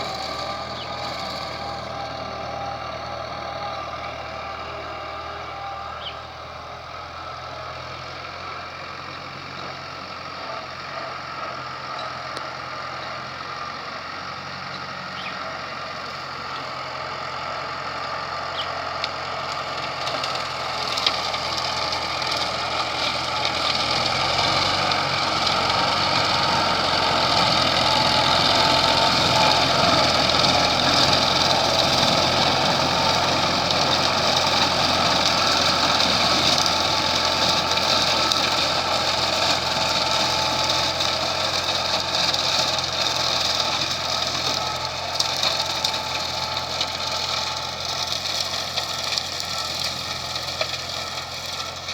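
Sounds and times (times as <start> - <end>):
tractor diesel engine running: 0.0 - 51.9.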